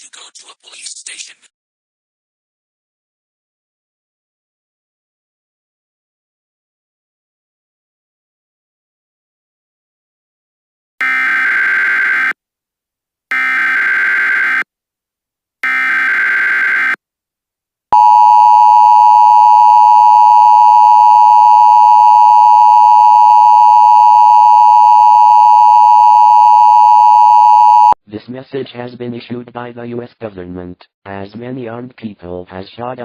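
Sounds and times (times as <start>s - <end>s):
two-tone attention tone: 18.0s - 28.0s.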